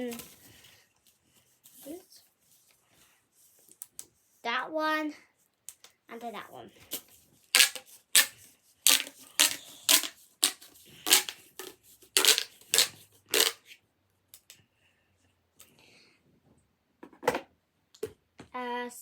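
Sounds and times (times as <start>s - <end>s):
plastic pop tube stretched: 7.5s - 8.3s, 8.9s - 13.6s.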